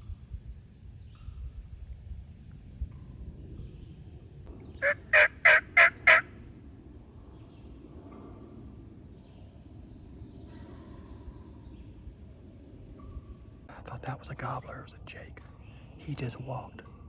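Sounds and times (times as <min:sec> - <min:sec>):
turkey gobbling: 0:04.8 - 0:06.3.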